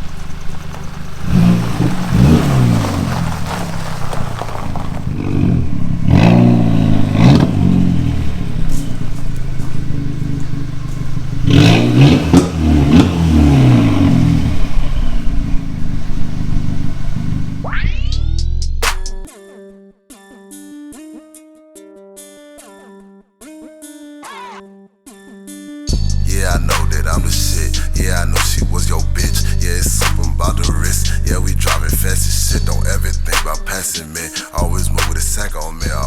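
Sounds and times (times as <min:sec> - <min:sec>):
car engine revving: 0:00.0 - 0:19.3, 0:26.0 - 0:36.0.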